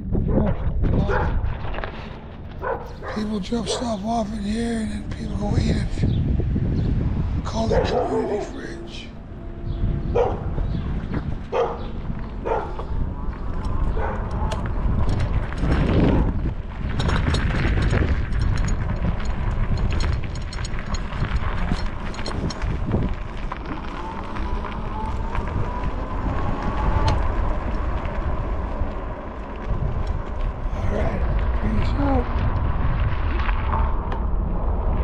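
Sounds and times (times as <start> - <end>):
wind buffeting microphone: 0.0 - 35.0
bike clicks and rattles: 11.0 - 30.7.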